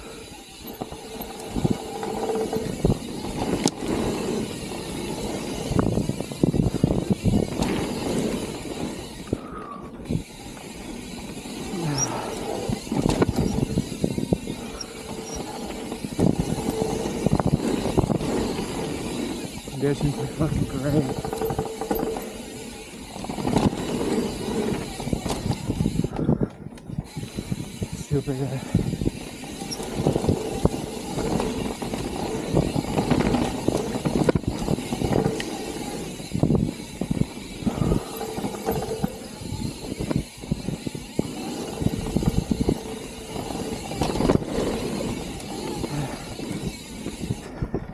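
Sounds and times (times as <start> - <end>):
tyre and wind rush: 0.0 - 47.9
bike rattling knocks: 11.4 - 26.2, 29.2 - 47.4.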